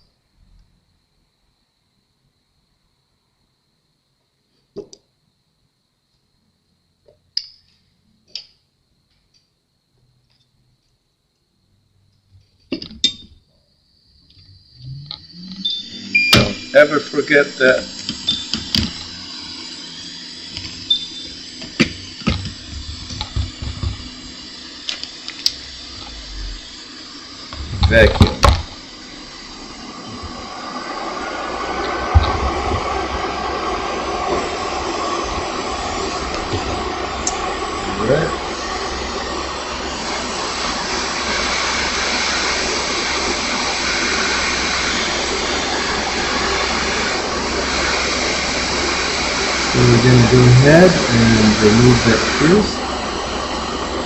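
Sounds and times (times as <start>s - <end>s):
air hiss: 14.5s - 54.0s.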